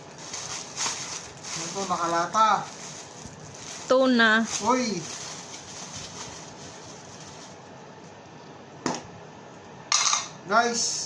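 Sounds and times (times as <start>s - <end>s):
packaging rustle: 0.0s - 7.7s.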